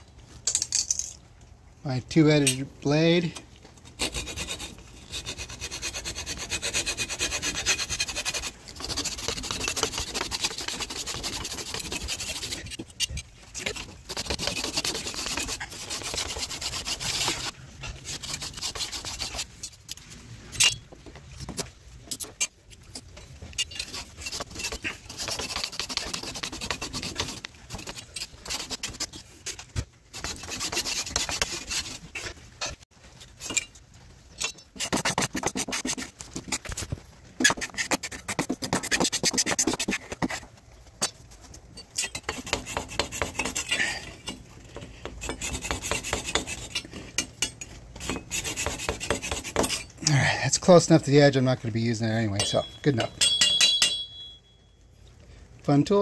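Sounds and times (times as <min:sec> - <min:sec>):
pull saw cutting wood: 0:04.0 - 0:12.8, 0:13.6 - 0:19.4, 0:23.8 - 0:29.2, 0:30.1 - 0:32.3, 0:42.2 - 0:44.0, 0:45.0 - 0:46.8, 0:48.0 - 0:49.9.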